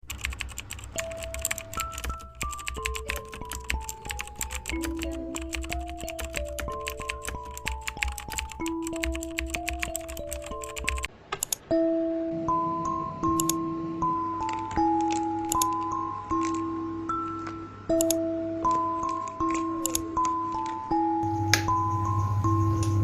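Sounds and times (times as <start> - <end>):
rapid keyboard typing: 0.0 - 11.6, 13.3 - 13.6, 14.4 - 16.7, 17.9 - 20.8
slow melody of held notes: 0.8 - 11.1, 11.7 - 23.0.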